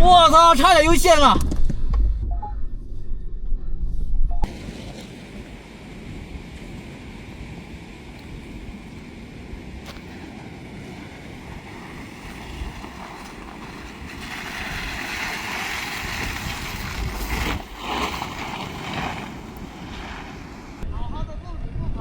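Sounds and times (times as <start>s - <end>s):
engine and road rumble: 1.0s - 20.9s
tyres and wind hissing: 4.4s - 21.1s.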